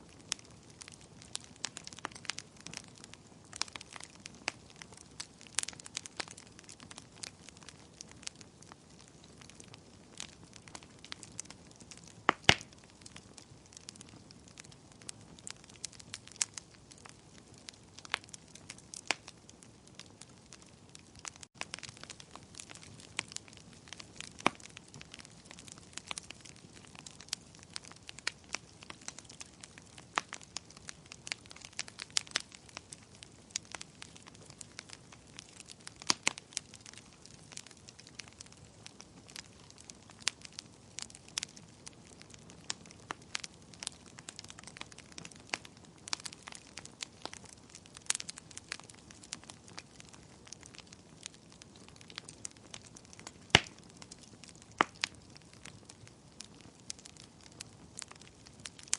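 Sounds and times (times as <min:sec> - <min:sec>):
wood fire crackling: 0:00.0 - 0:58.9.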